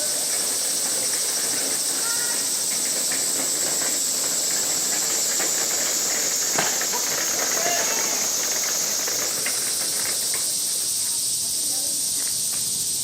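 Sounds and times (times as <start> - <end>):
high-pitched hiss: 0.0 - 13.0.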